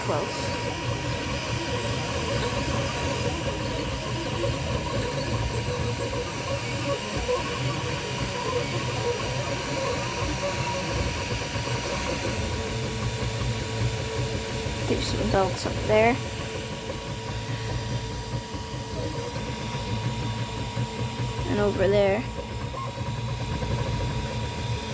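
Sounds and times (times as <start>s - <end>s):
three d printer running: 0.0s - 24.9s.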